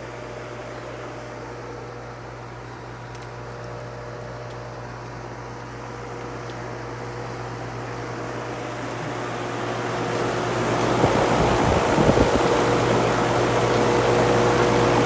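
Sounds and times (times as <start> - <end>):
air conditioner unit humming: 0.0 - 15.0
rushing fan noise: 5.3 - 15.0.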